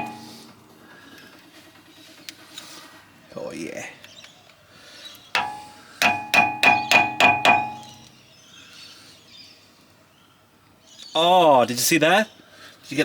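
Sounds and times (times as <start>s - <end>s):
hammer striking metal: 0.0s - 0.4s, 5.4s - 8.1s.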